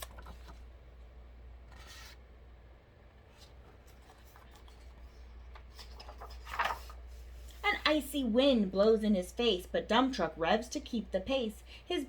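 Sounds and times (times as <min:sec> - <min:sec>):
faint paper rustles: 0:00.0 - 0:00.7, 0:01.6 - 0:02.3, 0:03.2 - 0:08.3
paper page turning: 0:00.0 - 0:00.7, 0:01.7 - 0:02.2, 0:03.3 - 0:07.8
low steady hum: 0:00.0 - 0:12.0.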